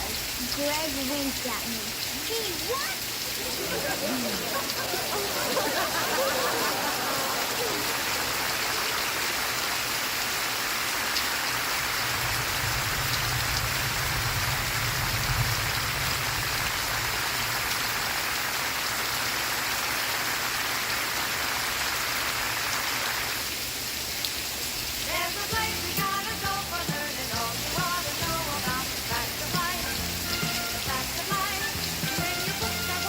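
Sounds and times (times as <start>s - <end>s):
steady rain falling: 0.0s - 33.0s
low rumble: 11.9s - 18.1s.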